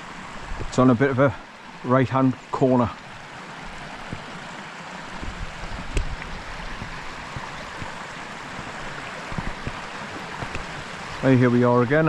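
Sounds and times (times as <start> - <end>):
stream flowing over boulders: 0.0 - 12.0
boots on loose stones: 5.2 - 10.8.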